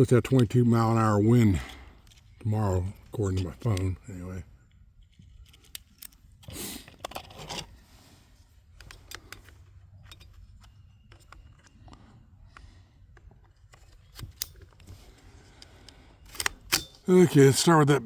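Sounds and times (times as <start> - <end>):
rifle handling clicks and rustles: 0.0 - 17.3.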